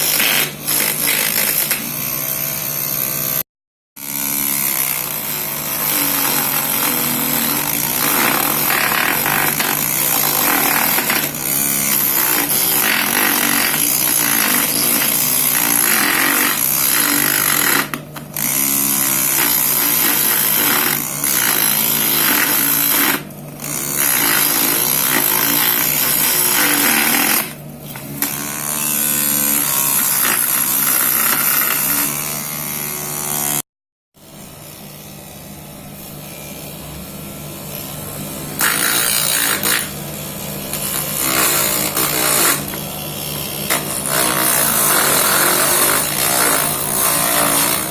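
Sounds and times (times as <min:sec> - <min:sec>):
cutting tool scraping wood: 0:04.0 - 0:33.6, 0:40.6 - 0:47.9.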